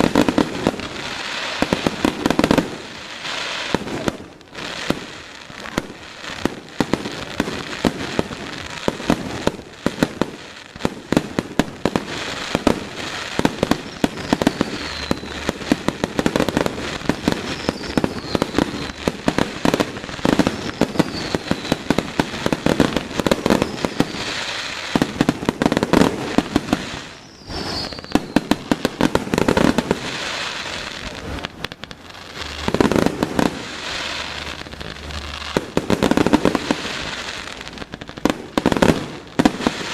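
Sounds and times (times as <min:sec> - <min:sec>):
fireworks cracks and bangs: 0:00.0 - 0:39.9
falling firework whistles: 0:11.4 - 0:39.9.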